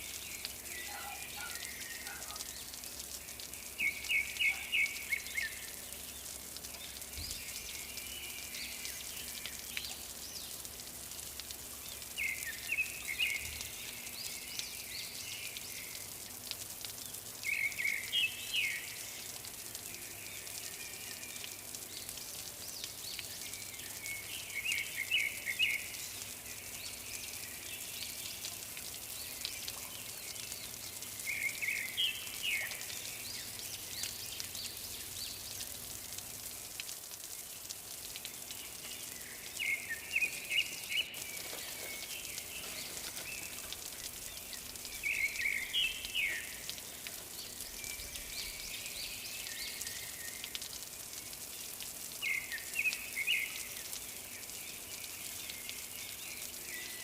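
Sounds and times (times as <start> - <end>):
steady hiss: 0.0 - 57.0
bird singing chirpy phrases: 0.1 - 10.6, 38.4 - 51.5.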